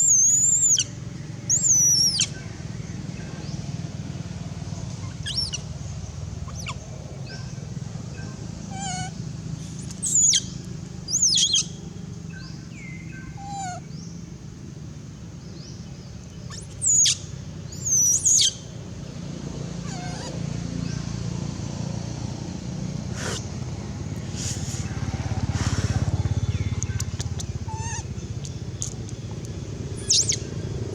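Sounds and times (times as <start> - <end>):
baby monkey shrill cries: 0.0 - 0.9, 1.5 - 2.4, 5.0 - 5.7, 6.5 - 6.8, 8.7 - 9.2, 9.9 - 11.7, 13.2 - 13.8, 16.5 - 18.6, 19.8 - 20.4, 27.6 - 28.6, 30.0 - 30.4
faint monkey chirps: 0.0 - 2.5, 4.8 - 5.7, 6.4 - 11.8, 12.4 - 14.1, 16.4 - 18.7, 19.8 - 21.0, 23.1 - 23.6, 25.5 - 30.6.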